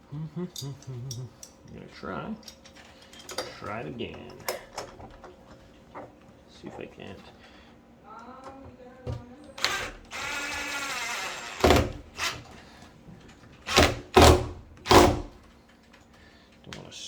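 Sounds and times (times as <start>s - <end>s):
power driver motor whirring: 9.6s - 12.5s.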